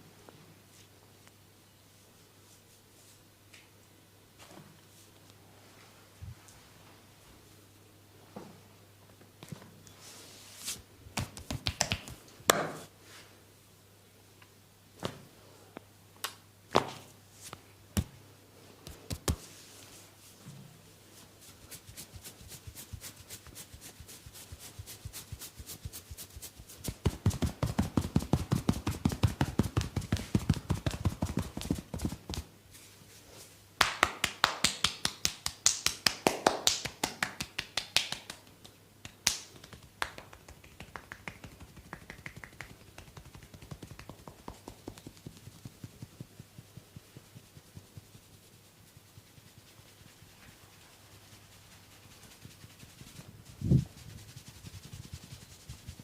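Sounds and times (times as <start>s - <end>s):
hands tapping on body: 11.2s - 12.8s, 18.8s - 19.4s, 26.9s - 32.5s, 33.8s - 48.0s.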